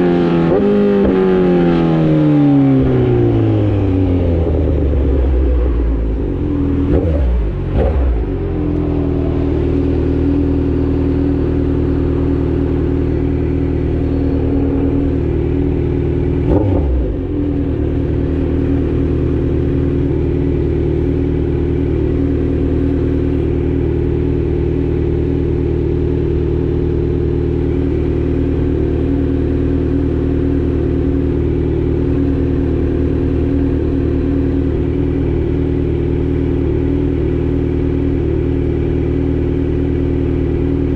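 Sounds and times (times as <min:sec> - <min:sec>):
motorcycle engine running: 0:00.0 - 0:40.9
engine rev blip: 0:10.0 - 0:17.2.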